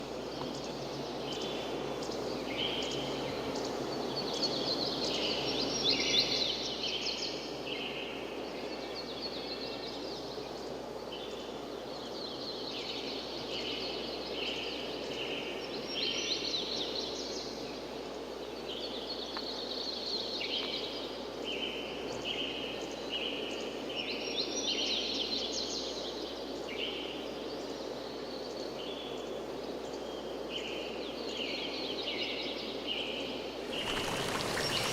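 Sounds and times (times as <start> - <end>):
outdoor background rush: 33.4 - 34.9
birds chirping: 33.6 - 34.9.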